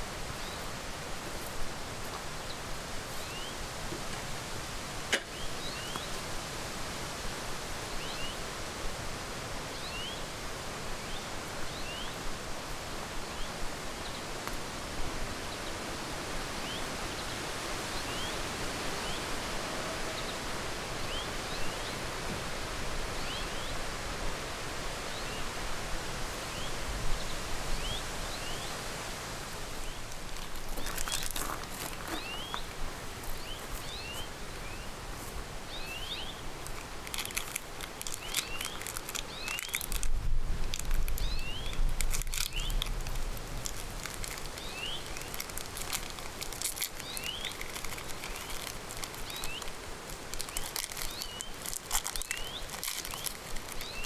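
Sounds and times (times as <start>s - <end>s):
bird chirping: 29.8s - 32.7s, 33.3s - 35.0s, 35.7s - 36.5s, 37.4s - 40.0s, 41.1s - 43.0s, 43.7s - 46.0s, 46.6s - 49.7s, 50.4s - 54.0s
sharp crackling clicks: 36.6s - 54.0s.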